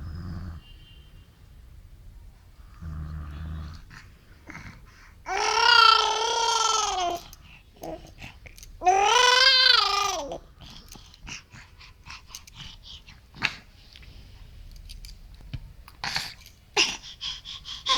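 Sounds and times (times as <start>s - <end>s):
baby fussing cry: 5.3s - 7.3s, 8.8s - 10.4s.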